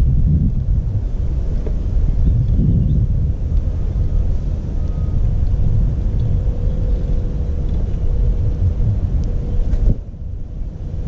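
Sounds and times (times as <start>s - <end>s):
faint steady hum: 0.0s - 11.0s
wind buffeting microphone: 0.0s - 11.0s.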